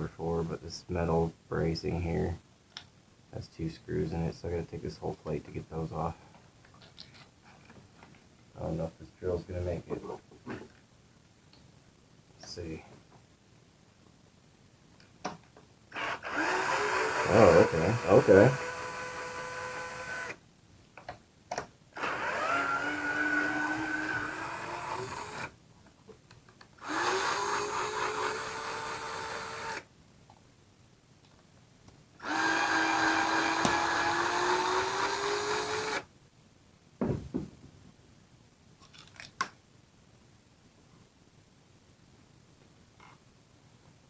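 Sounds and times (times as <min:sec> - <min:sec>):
power drill motor whine: 0:15.9 - 0:20.4, 0:22.0 - 0:25.5, 0:26.8 - 0:29.8, 0:32.2 - 0:36.0.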